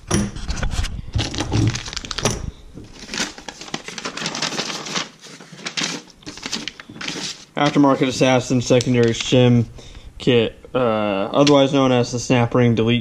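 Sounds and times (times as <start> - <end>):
packaging crinkling: 0.7 - 9.6.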